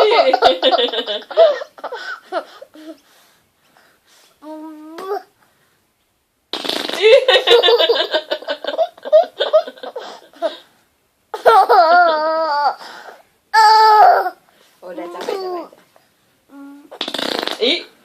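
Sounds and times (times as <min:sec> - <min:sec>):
laughter: 0:00.0 - 0:02.0, 0:07.0 - 0:10.1
child blowing raspberries: 0:06.5 - 0:07.1, 0:16.5 - 0:17.6.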